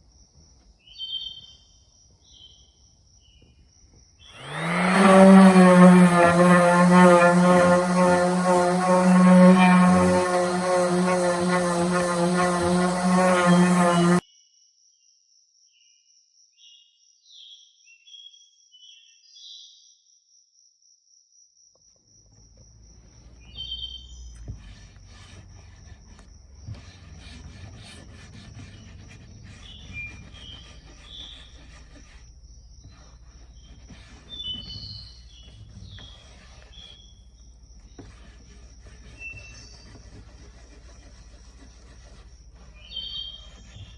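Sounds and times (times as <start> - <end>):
rubbing scraping noise: 4.3 - 14.2, 22.9 - 43.9.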